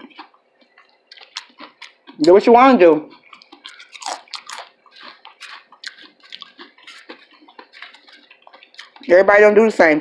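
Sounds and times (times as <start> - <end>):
chewing and lip smacking: 0.0 - 9.3.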